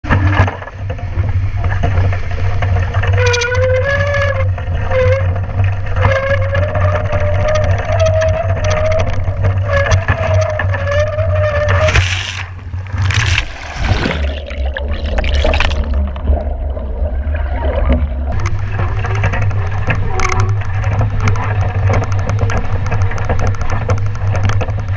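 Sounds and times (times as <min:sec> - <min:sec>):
boat crash with loud splashes: 0:11.7 - 0:16.6.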